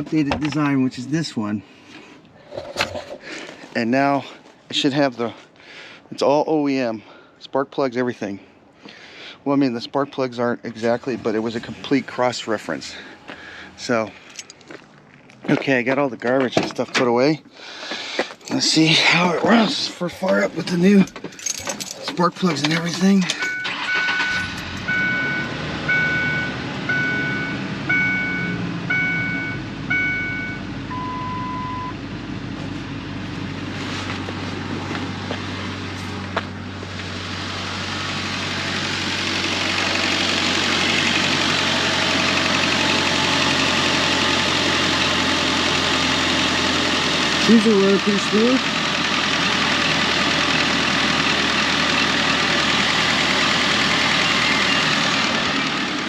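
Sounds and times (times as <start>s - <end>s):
car engine idling: 18.3s - 56.0s
low long warning tone: 24.3s - 32.0s.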